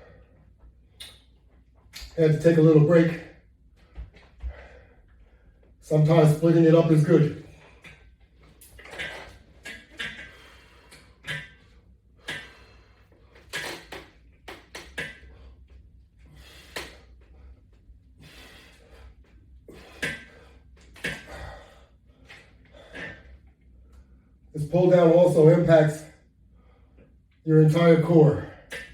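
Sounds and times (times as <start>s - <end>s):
forced breaths: 3.2s - 5.8s, 15.1s - 24.4s.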